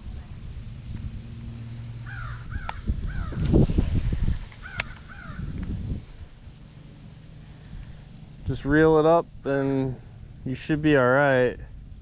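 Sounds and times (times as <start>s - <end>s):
low rumble: 0.0s - 12.0s
crow cawing: 2.0s - 3.4s, 4.6s - 5.6s.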